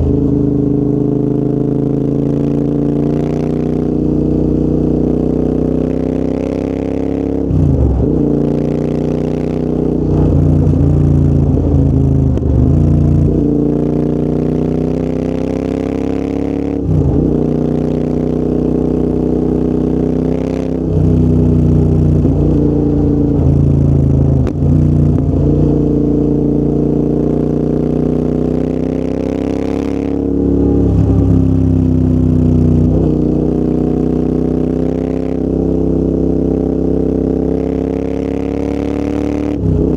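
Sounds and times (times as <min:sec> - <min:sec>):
motorcycle engine revving: 0:00.0 - 0:39.9.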